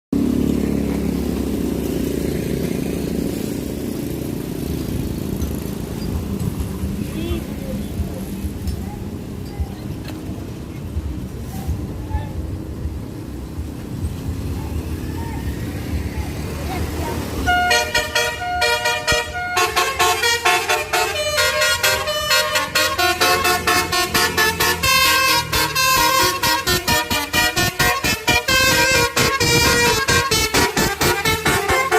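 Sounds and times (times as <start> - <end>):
diesel bus engine rumbling: 0.1 - 31.9
multi-tone air horn melody: 17.4 - 31.9.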